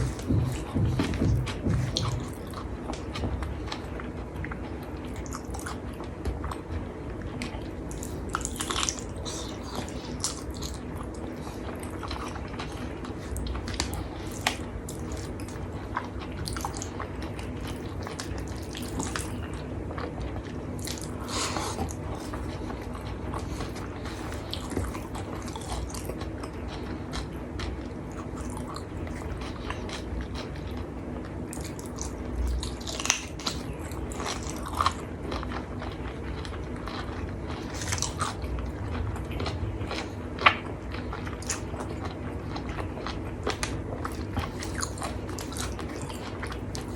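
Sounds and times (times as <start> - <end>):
low hum: 0.0 - 32.8.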